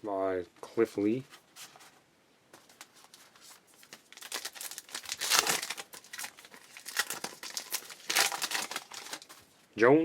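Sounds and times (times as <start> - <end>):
card pack wrapper crinkling: 2.7 - 9.4.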